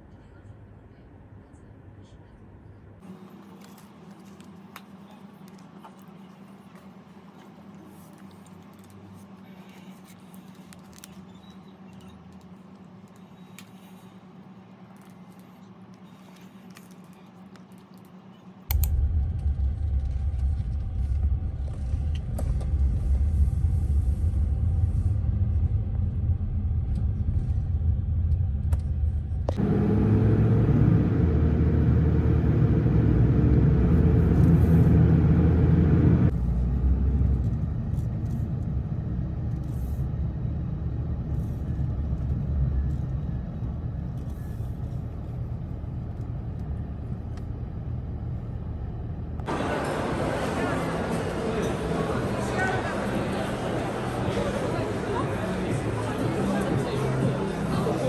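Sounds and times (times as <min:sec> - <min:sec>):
car driving rumble: 0:18.7 - 0:58.0.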